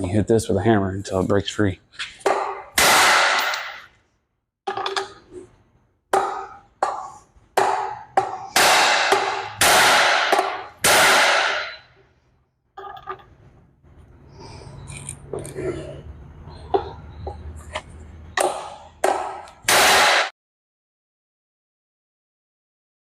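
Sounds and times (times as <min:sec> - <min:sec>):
hammer striking metal: 0:06.1 - 0:12.0.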